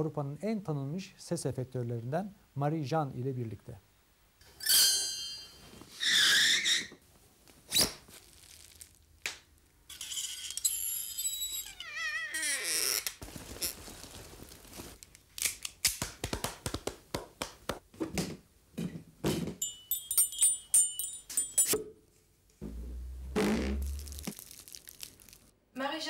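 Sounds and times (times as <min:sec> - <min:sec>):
metallic jingling ring: 0:19.6 - 0:21.8
low hum: 0:22.6 - 0:24.4.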